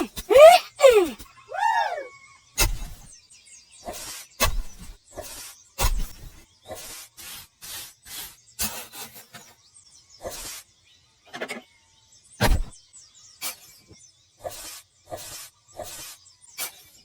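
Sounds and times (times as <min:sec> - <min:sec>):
rubbing strokes: 0:14.4 - 0:16.9.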